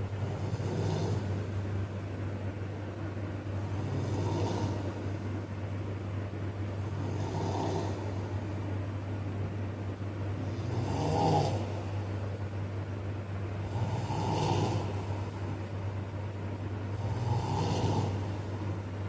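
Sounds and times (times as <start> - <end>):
man snoring: 0.0 - 1.5, 3.6 - 5.3, 6.8 - 8.3, 10.4 - 12.1, 13.6 - 15.5, 16.9 - 18.8
steady low hum: 0.0 - 19.0.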